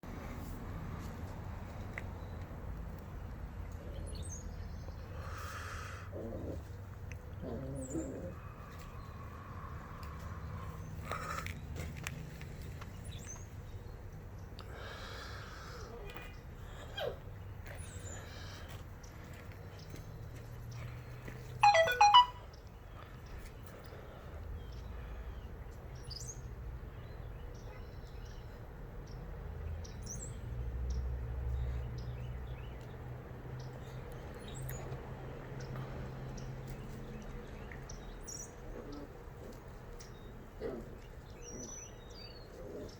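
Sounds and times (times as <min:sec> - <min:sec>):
loud high-pitched puppy notes: 0:21.6 - 0:22.4.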